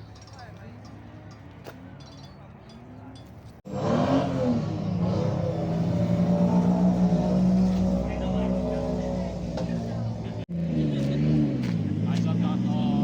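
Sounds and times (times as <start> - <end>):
car engine at high revs: 3.7 - 13.0.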